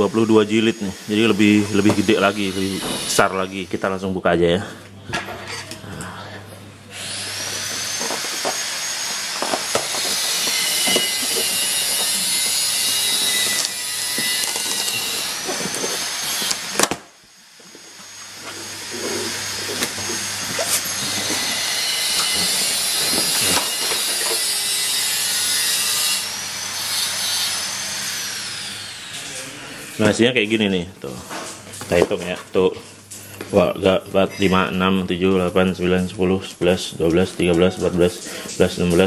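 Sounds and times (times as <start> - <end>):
power tool cutting wood: 0.0 - 3.8, 6.9 - 30.3.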